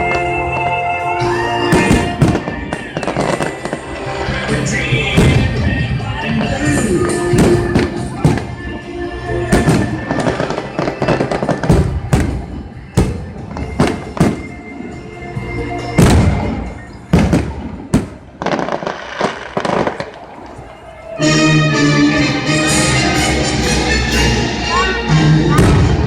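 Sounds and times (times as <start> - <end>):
fireworks bursting with bangs: 0.0 - 21.4
pop music over sound system: 0.7 - 11.2
firework crackling: 1.0 - 15.1, 16.0 - 21.2.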